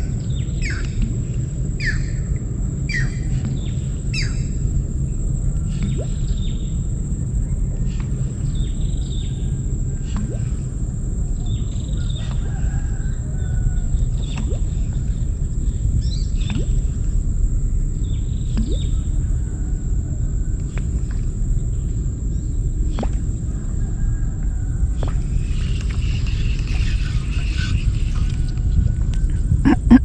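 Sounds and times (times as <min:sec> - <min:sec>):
low rumble: 0:00.0 - 0:30.0
high whine: 0:25.1 - 0:30.0.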